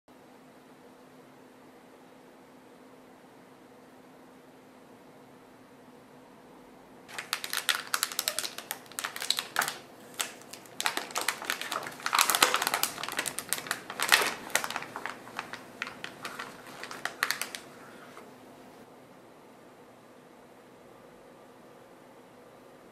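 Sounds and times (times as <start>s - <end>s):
faint steady hum: 0.1s - 22.9s
dense crinkling clicks: 7.1s - 18.3s.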